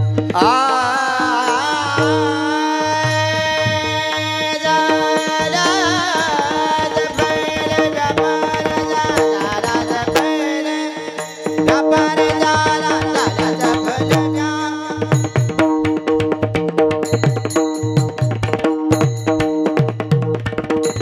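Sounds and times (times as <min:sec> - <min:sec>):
held accompanying tones: 0:00.0 - 0:21.0
high voice singing: 0:00.3 - 0:15.4
hand drum strokes: 0:11.2 - 0:21.0.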